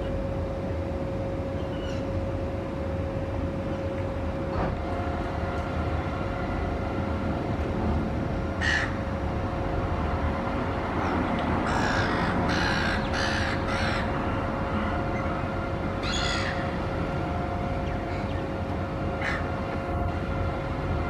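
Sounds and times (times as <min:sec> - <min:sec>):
steady background hum: 0:00.0 - 0:21.0
raven cawing: 0:08.6 - 0:09.0, 0:11.6 - 0:14.2, 0:16.0 - 0:16.8, 0:19.2 - 0:19.6.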